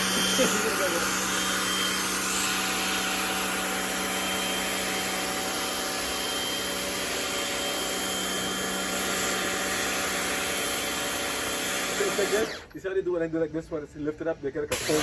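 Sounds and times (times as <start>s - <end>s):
pressure washer motor humming: 0.0s - 12.8s, 14.7s - 15.0s.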